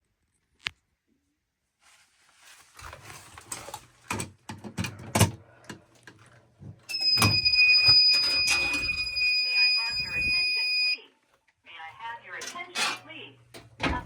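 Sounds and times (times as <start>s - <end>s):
handling knocks and rustling: 1.9s - 6.9s
fire alarm high tone: 6.9s - 11.0s.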